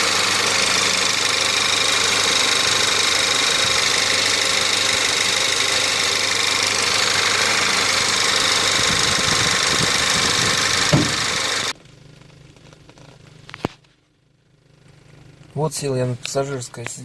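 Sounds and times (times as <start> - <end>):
car engine idling: 0.0 - 17.0
thump: 10.9 - 11.4.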